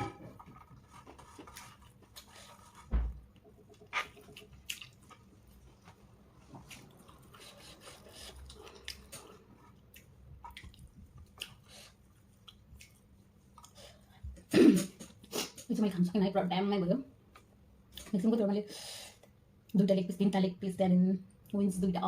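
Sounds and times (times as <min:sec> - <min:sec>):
chewing with wet mouth clicks: 0:03.7 - 0:05.6, 0:06.6 - 0:14.0.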